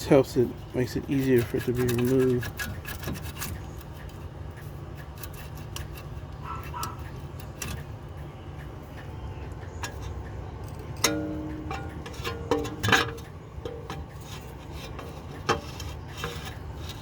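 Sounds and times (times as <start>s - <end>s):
steady low hum: 0.0s - 17.0s
metallic clicks and taps: 1.3s - 17.0s
metallic ring-scrape: 11.1s - 17.0s.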